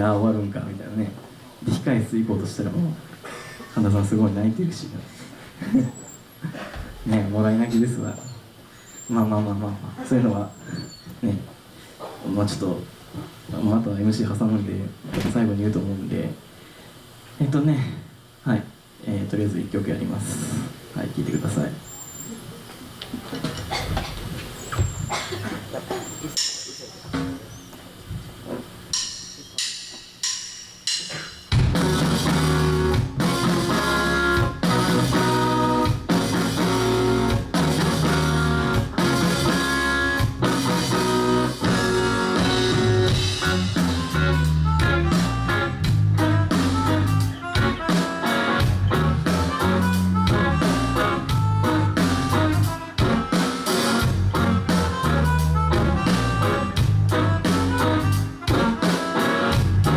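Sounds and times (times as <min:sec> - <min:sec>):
rock band playing: 0:28.9 - 0:59.9.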